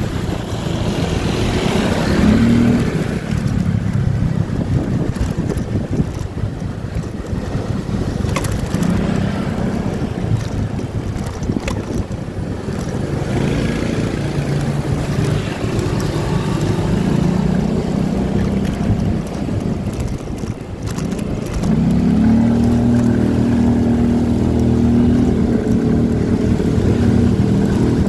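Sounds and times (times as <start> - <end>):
motorcycle engine running: 0.0 - 28.0
wind on microphone: 0.0 - 28.0.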